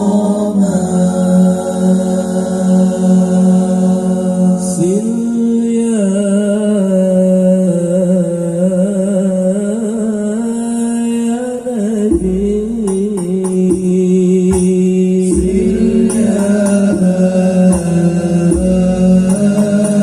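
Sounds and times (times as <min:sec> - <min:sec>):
person singing long notes: 0:11.4 - 0:20.0.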